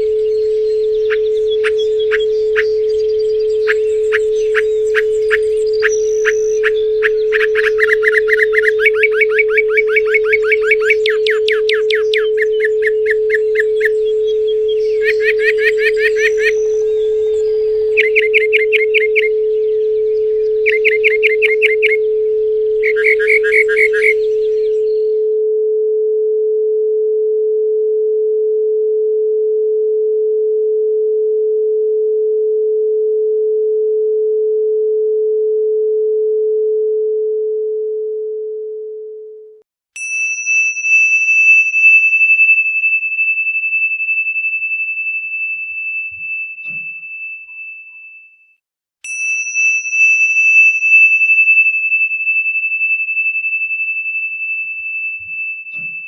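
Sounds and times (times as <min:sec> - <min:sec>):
steady pure tone: 0:00.0 - 0:25.2, 0:49.1 - 0:56.0
high ringing tone: 0:00.0 - 0:25.5, 0:40.0 - 0:56.0.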